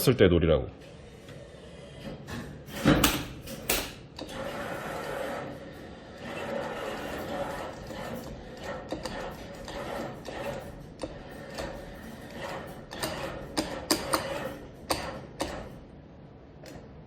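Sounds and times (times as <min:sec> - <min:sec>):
machine hum: 0:00.7 - 0:17.0
claw crane mechanism clicking: 0:02.7 - 0:15.8.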